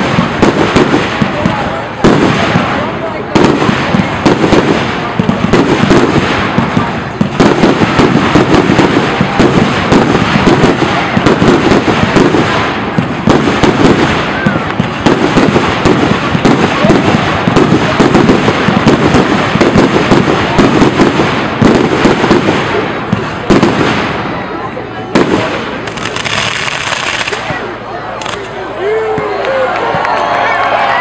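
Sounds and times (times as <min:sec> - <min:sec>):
fireworks booming and crackling: 0:00.0 - 0:30.1.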